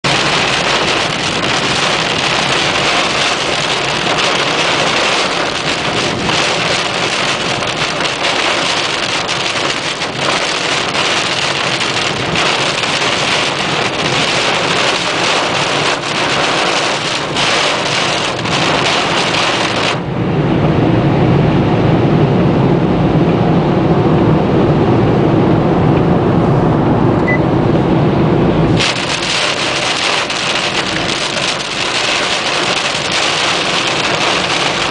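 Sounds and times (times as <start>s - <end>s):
heavy rain on a car: 0.0s - 25.8s, 27.8s - 34.9s.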